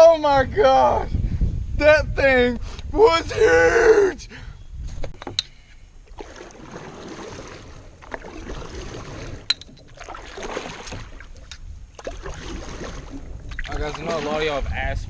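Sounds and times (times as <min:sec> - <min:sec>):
water lapping against kayak hull: 0:06.0 - 0:14.8.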